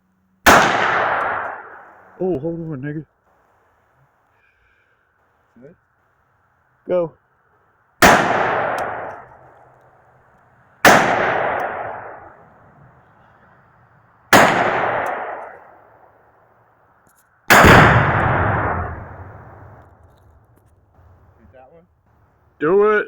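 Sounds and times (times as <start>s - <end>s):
explosive target booms with echo: 0.5s - 1.8s, 8.0s - 9.3s, 10.8s - 12.4s, 14.3s - 15.6s, 17.5s - 19.8s.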